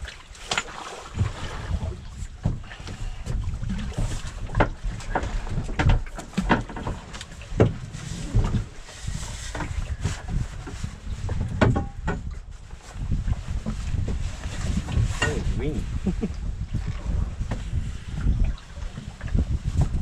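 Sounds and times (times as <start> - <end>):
wind rumble on microphone: 0.0 - 20.0
knocks and clunks of gear: 3.2 - 8.6, 11.3 - 12.4.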